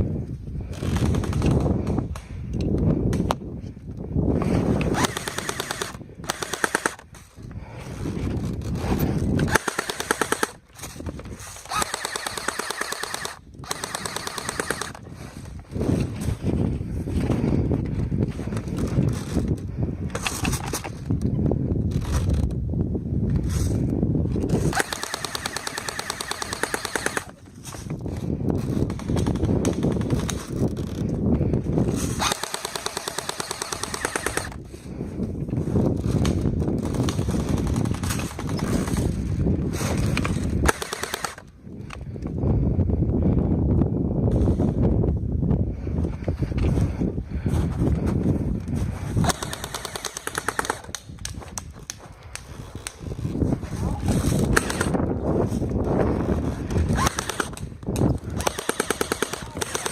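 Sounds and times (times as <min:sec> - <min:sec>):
airsoft gun rapid fire: 0:00.7 - 0:01.7, 0:04.9 - 0:07.0, 0:09.4 - 0:10.6, 0:11.7 - 0:15.0, 0:24.6 - 0:27.4, 0:28.8 - 0:30.5, 0:32.2 - 0:34.6, 0:40.2 - 0:41.4, 0:49.2 - 0:51.0, 0:54.4 - 0:55.0, 0:56.9 - 0:57.7, 0:58.3 - 0:59.9.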